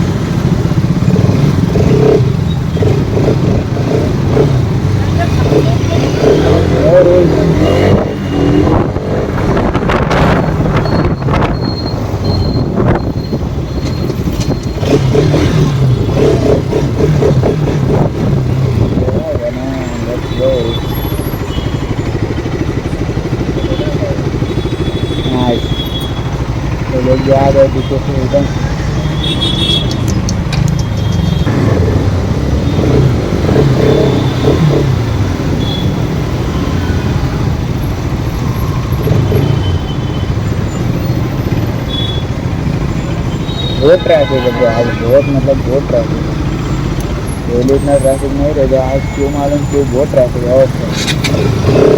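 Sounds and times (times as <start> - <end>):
motorcycle engine running: 0.0 - 51.9
traffic and road noise: 0.0 - 51.9
wind noise on microphone: 7.9 - 15.1.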